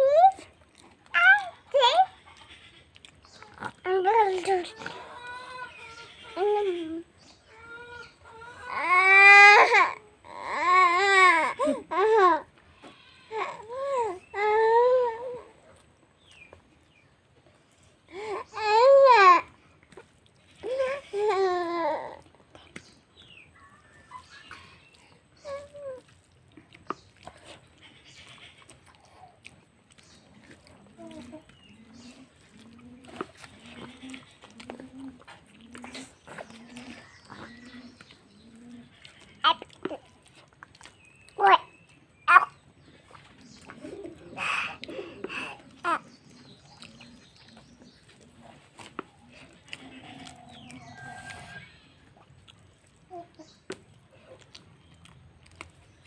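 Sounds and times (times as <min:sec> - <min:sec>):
person eating: 0:00.3 - 0:06.9, 0:19.4 - 0:56.0
mouth clicks and smacks: 0:26.0 - 0:50.9, 0:52.1 - 0:56.0.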